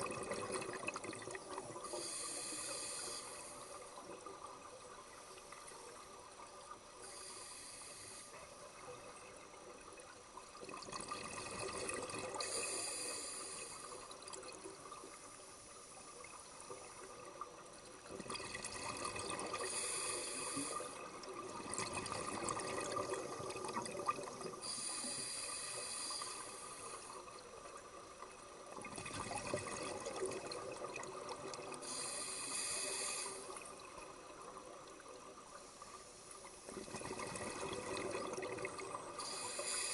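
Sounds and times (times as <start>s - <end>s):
regulator inhale hiss: 1.7s - 4.1s, 7.0s - 8.9s, 12.3s - 14.2s, 19.5s - 21.2s, 24.6s - 27.4s, 31.4s - 33.9s, 39.1s - 39.9s
exhaled bubbles rushing: 21.3s - 24.6s, 36.7s - 39.2s.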